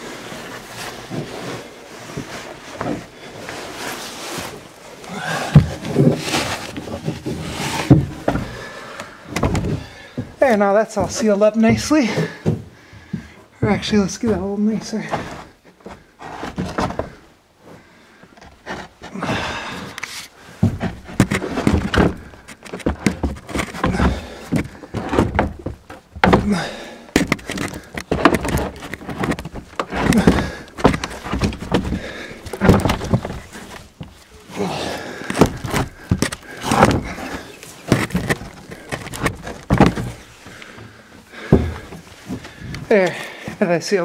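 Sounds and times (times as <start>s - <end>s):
cover scraping: 0.0s - 9.9s, 20.0s - 43.0s
knocks and thuds on wooden cover: 1.0s - 3.2s, 5.2s - 17.3s, 20.5s - 43.6s.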